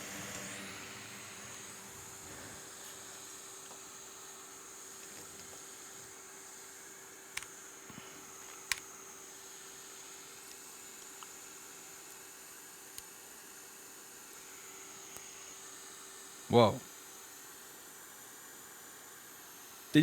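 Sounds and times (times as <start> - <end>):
electrical hum and hiss: 0.0 - 20.0.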